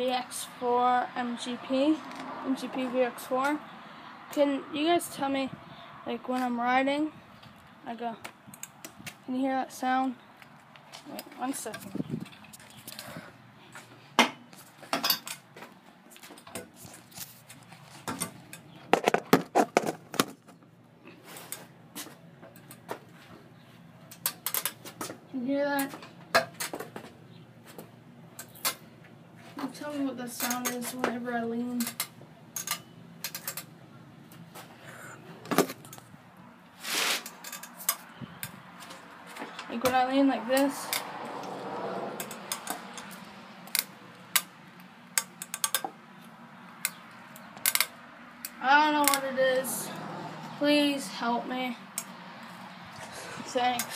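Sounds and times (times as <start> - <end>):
scooter metallic clicks and rattles: 22.5 - 22.9, 24.1 - 25.1, 30.3 - 33.7, 37.2 - 38.6, 39.4 - 46.0, 46.8 - 49.4
rattling scrape: 36.8 - 38.0
scooter clicking: 37.2 - 46.0.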